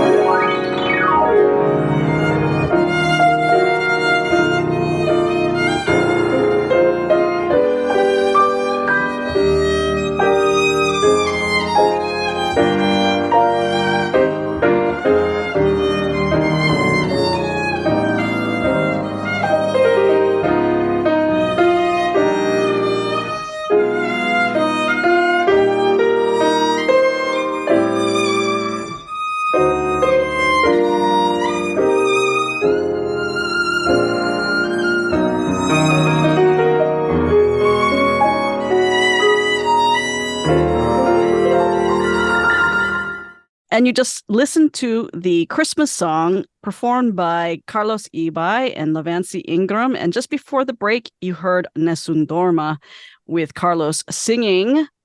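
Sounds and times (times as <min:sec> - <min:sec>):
piano accompaniment: 0:00.0 - 0:43.5
violin melody: 0:00.0 - 0:43.5.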